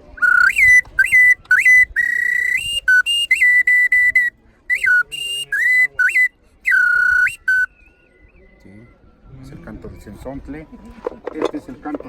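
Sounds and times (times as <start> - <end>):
clay whistle imitating birdsong: 0.1 - 7.9.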